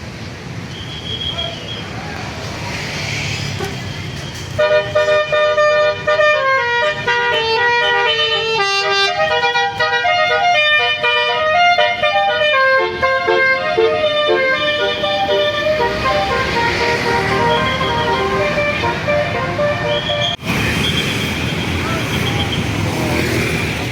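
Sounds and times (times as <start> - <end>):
vehicle noise: 0.0 - 23.9
bus air horn playing a tune: 4.6 - 20.4.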